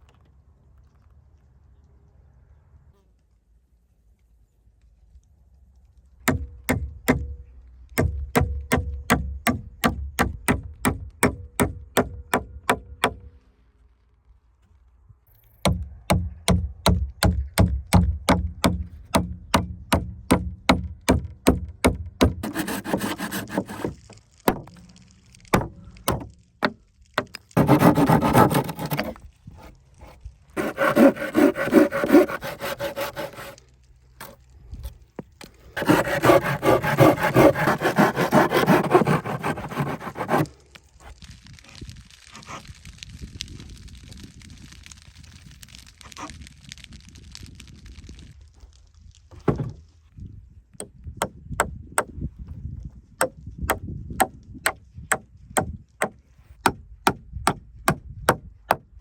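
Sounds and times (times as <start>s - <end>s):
hand saw cutting timber: 6.3s - 7.4s, 8.0s - 13.2s, 17.6s - 24.9s, 25.5s - 33.6s, 35.7s - 40.6s.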